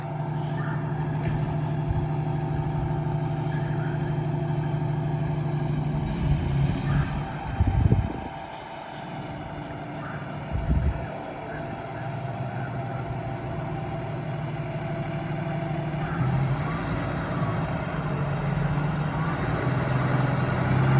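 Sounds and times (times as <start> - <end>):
heavy low rumble: 0.0 - 16.6
truck engine humming: 0.0 - 20.9.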